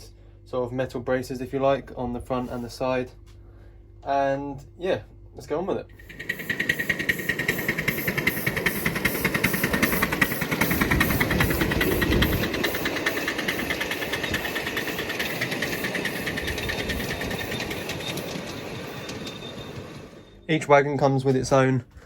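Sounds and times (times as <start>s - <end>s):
small engine pulsing: 5.9s - 20.5s.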